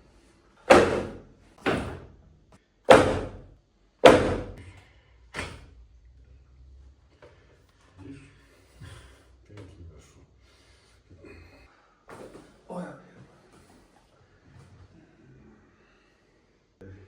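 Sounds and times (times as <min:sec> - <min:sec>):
loud slamming impacts: 0:00.7 - 0:02.1, 0:02.9 - 0:04.6.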